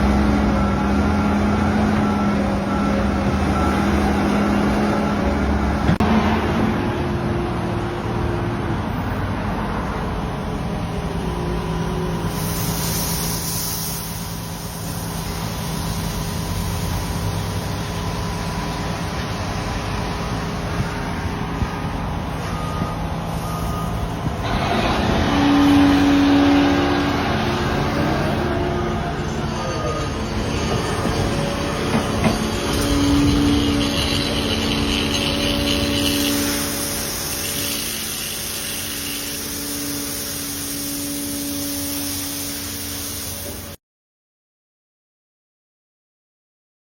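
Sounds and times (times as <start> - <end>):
construction machinery engine running: 0.0 - 43.8
loud steady tone: 17.9 - 43.8.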